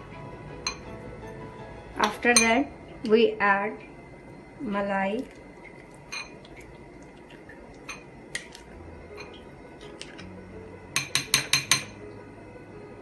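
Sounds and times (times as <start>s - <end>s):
spoon clinking on bowl: 2.0s - 2.6s, 6.1s - 6.4s, 7.9s - 8.1s, 11.0s - 12.0s.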